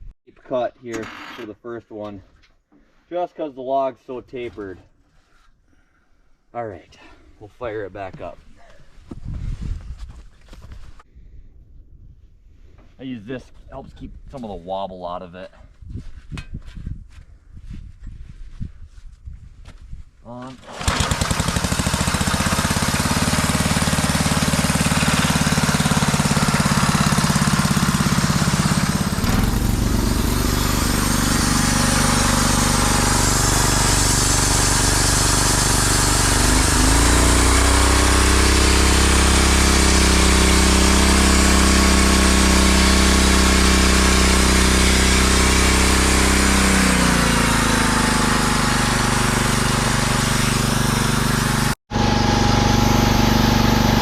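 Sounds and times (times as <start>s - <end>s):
band sawmill cutting log: 20.6s - 54.0s.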